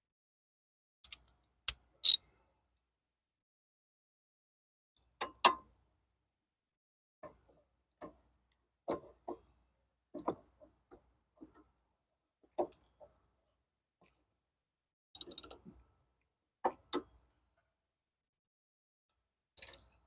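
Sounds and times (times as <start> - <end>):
hand tools clicking on metal: 15.2 - 15.6, 19.6 - 19.8.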